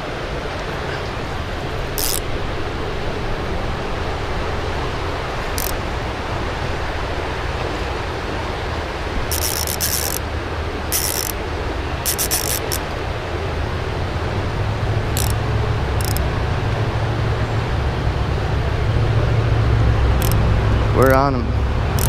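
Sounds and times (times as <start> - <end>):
creek water rushing: 0.0 - 22.0
high-pitched buzzes: 2.0 - 2.3, 5.5 - 5.8, 9.3 - 10.2, 10.9 - 11.4, 12.0 - 13.0, 15.1 - 16.2, 20.2 - 21.1.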